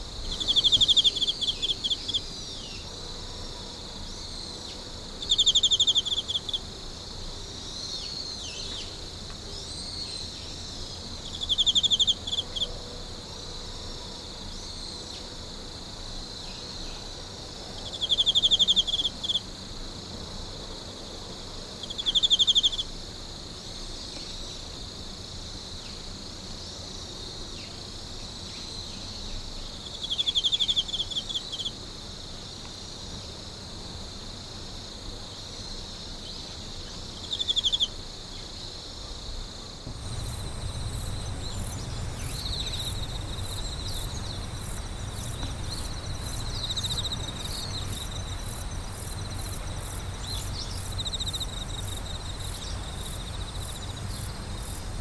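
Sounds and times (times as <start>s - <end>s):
crickets and insects trilling: 0.0s - 55.0s
nearby insect trilling: 0.2s - 2.4s, 39.9s - 55.0s
low background rumble: 39.9s - 55.0s.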